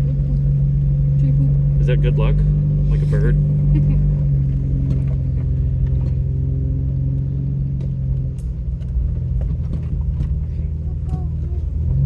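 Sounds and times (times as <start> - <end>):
vehicle engine droning: 0.0 - 12.0.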